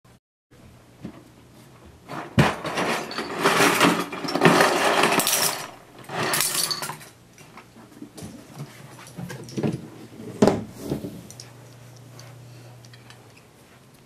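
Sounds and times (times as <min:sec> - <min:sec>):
plastic toy pieces clattering: 0:02.6 - 0:07.1.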